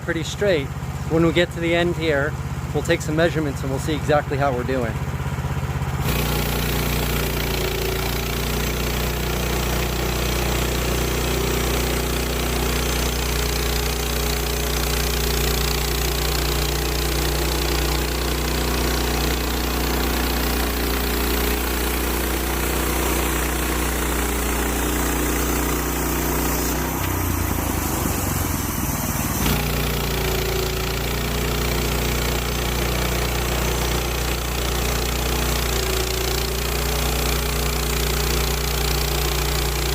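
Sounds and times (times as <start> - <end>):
gasoline engine running: 0.0 - 39.9
band blade sawing log: 6.0 - 39.9.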